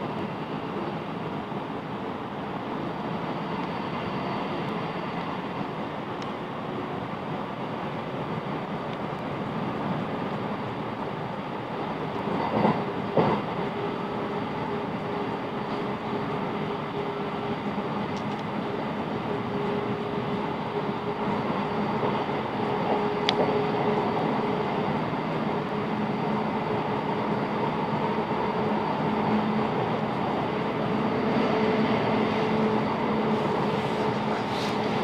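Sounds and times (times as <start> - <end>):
train wheels rumbling on track: 0.0 - 35.0.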